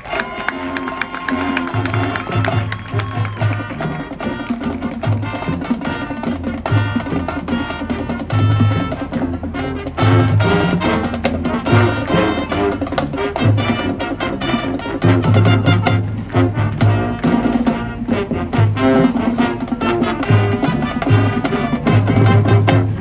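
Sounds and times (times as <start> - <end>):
brass chords: 0.0 - 23.0
drum and percussion beat: 0.0 - 23.0.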